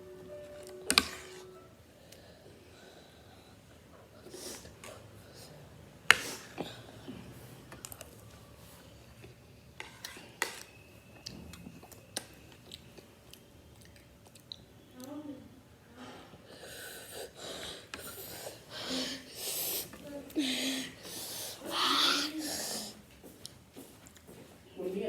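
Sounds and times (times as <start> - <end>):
chewing: 11.8 - 14.7
breathy hisses through mouth: 16.5 - 23.0.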